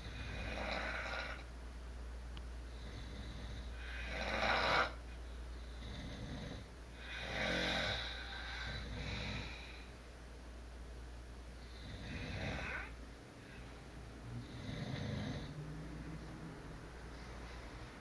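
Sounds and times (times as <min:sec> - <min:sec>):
person snoring: 0:00.0 - 0:01.5, 0:02.7 - 0:05.0, 0:05.6 - 0:09.8, 0:11.7 - 0:13.6, 0:14.3 - 0:15.7.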